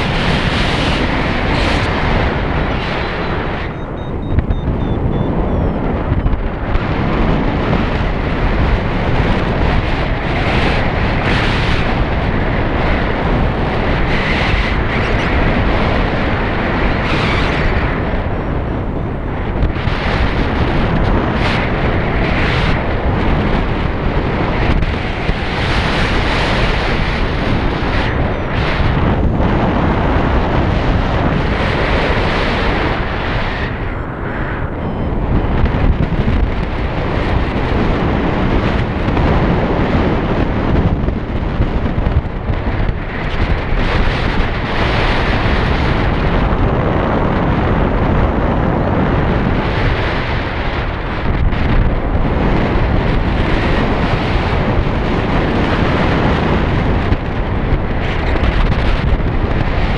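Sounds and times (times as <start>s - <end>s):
wind buffeting microphone: 0.0s - 59.9s.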